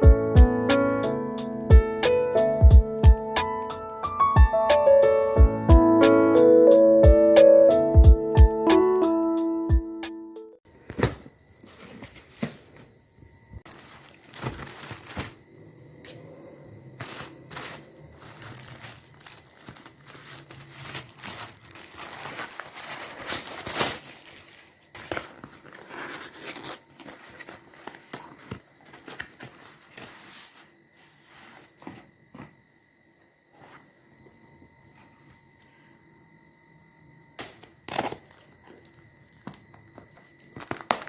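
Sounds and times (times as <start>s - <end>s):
plastic and paper crinkling: 10.8s - 12.9s, 13.6s - 15.4s, 17.0s - 32.5s, 37.9s - 41.0s.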